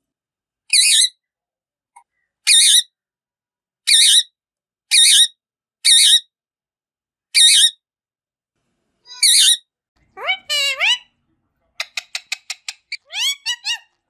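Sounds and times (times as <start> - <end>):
parrot high-pitched calls: 0.7 - 1.1, 2.5 - 2.9, 3.9 - 4.3, 4.9 - 6.2, 7.4 - 7.8, 9.1 - 9.6, 10.2 - 11.1, 11.8 - 14.0.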